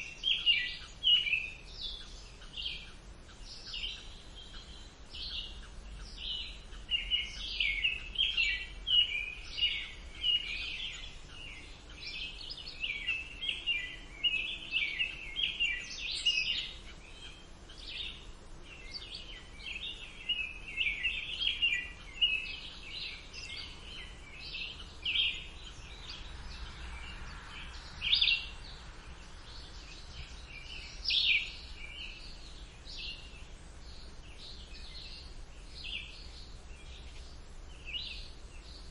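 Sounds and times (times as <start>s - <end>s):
songbirds chirping and singing: 0.0s - 38.9s
faint low rumble: 22.0s - 38.9s.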